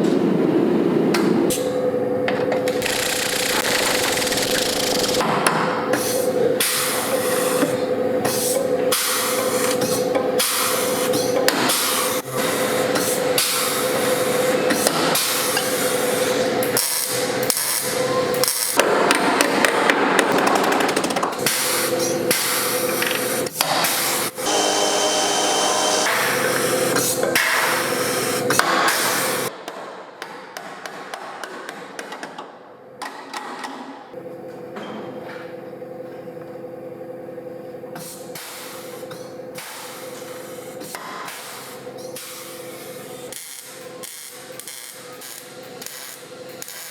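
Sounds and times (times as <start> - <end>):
metalworking tools on sheet metal: 2.8 - 5.3.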